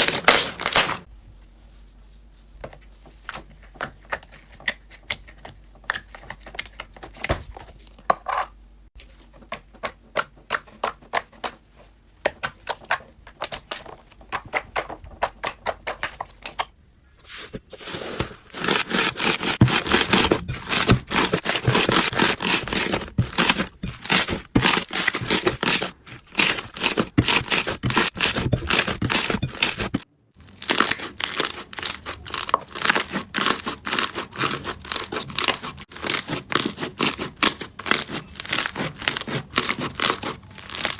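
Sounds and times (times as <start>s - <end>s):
slime crackling and popping: 30.4s - 36.7s.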